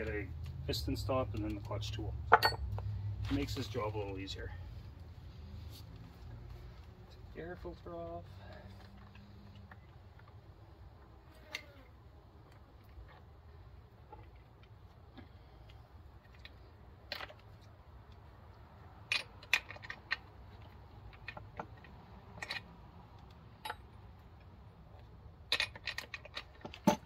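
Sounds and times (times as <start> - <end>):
metal parts and tools clinking: 0.0 - 4.3, 19.0 - 27.0.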